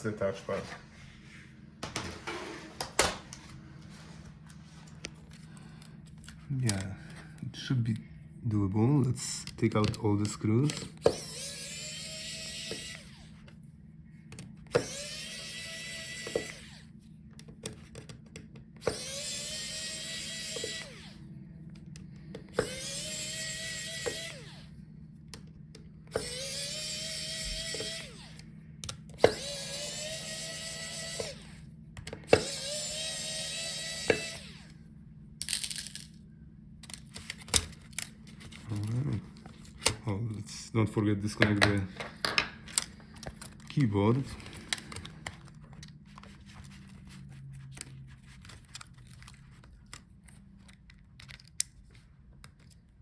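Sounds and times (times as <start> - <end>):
electric screwdriver whine: 10.6 - 13.6, 14.6 - 17.0, 18.8 - 21.3, 22.2 - 24.8, 26.1 - 34.8.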